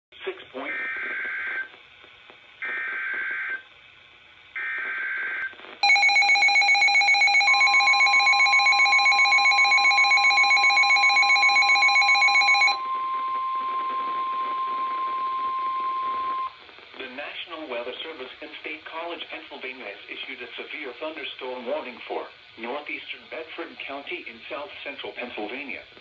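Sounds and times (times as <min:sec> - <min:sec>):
single-tone warning alarm: 0:04.6 - 0:16.5
steady attention signal tone: 0:05.8 - 0:16.6.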